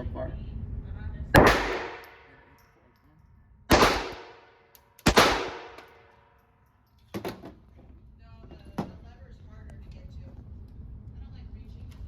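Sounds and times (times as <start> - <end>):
pistol shots with echo: 1.4 - 2.4, 3.7 - 6.1.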